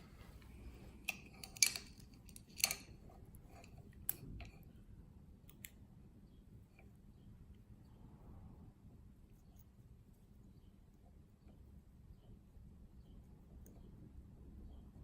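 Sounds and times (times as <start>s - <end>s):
metallic clicks of lock parts: 1.0s - 4.6s.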